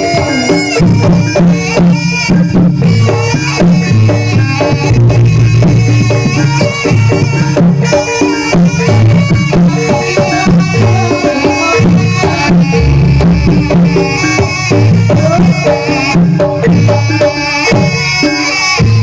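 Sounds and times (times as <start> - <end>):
hand drums beating: 0.0 - 19.0
melodic instrument lines: 0.0 - 19.0
low bass: 11.8 - 17.2.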